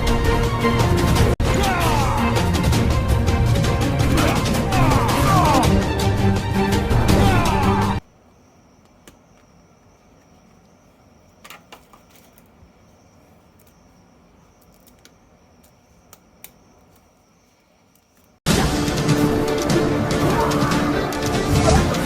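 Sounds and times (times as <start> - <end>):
loud music: 0.0 - 8.0, 18.5 - 22.0.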